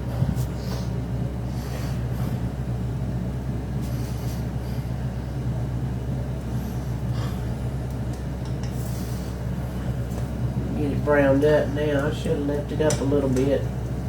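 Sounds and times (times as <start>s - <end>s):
kitchen appliance fan humming: 0.0s - 14.0s.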